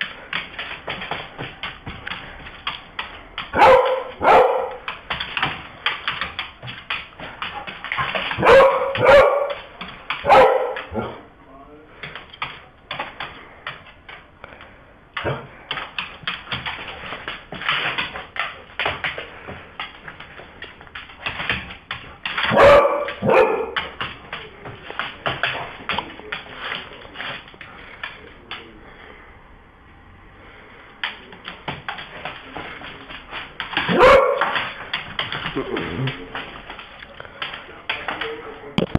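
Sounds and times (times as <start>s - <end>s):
dog claws scrabbling on hard floor: 0.0s - 11.2s, 12.0s - 28.7s, 31.0s - 38.9s
dog barking: 3.5s - 4.8s, 8.4s - 11.2s, 22.5s - 23.9s, 33.9s - 34.6s.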